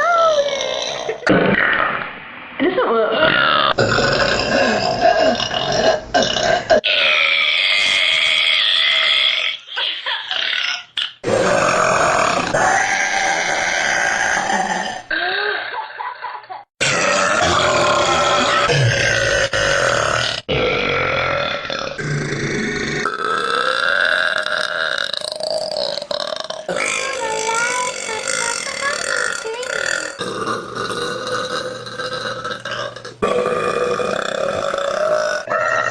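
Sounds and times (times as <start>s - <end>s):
woman burping: 0.0s - 1.8s, 2.8s - 7.2s, 16.8s - 22.4s, 23.0s - 35.9s.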